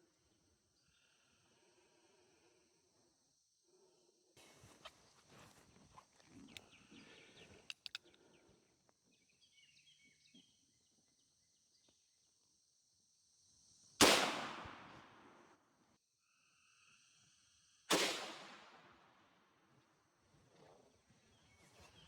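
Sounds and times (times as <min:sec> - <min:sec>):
rustling: 0:04.4 - 0:08.0
insects chirring: 0:04.4 - 0:09.6
gun handling clicks: 0:05.4 - 0:08.2.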